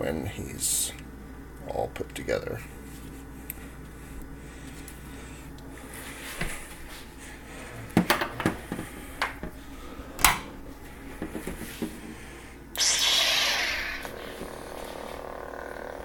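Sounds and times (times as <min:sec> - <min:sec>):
buzzing lightsaber hum: 0:00.0 - 0:16.0
lightsaber ignition hiss: 0:12.7 - 0:15.3.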